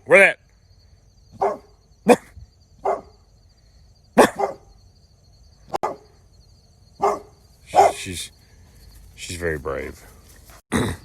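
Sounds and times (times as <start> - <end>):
dog barking: 1.3 - 3.2, 4.2 - 4.8, 5.7 - 6.2, 7.0 - 8.1.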